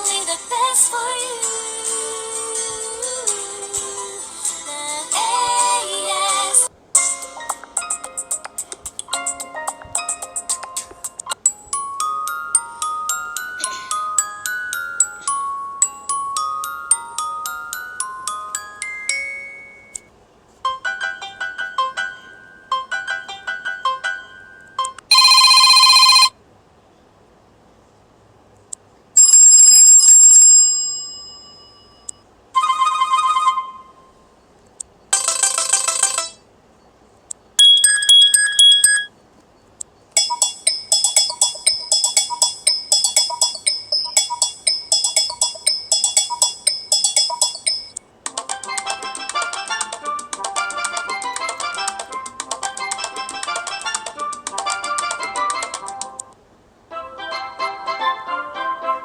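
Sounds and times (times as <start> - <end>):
bell-like chime: 25.1 - 26.3, 30.8 - 32.2, 37.6 - 39.1
buzzing electronic ring: 25.1 - 26.3
bell-like electronic notes: 37.6 - 39.1
chiming note: 37.6 - 39.1.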